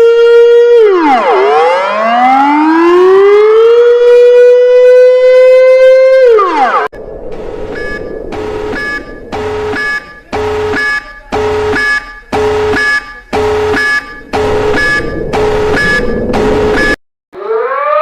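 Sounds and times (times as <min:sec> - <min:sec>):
two-tone electronic alarm beeps: 0:07.3 - 0:17.0.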